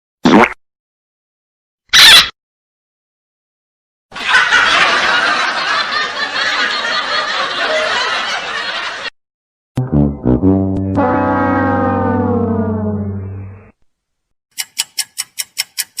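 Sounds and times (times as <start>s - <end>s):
crowd laughing: 4.1s - 9.2s.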